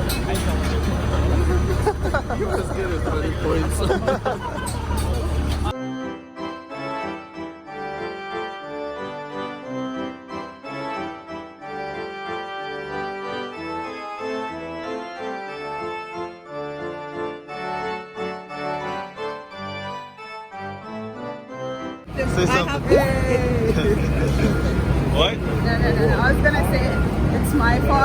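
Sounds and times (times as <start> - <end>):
background music of held chords: 5.8 - 26.3.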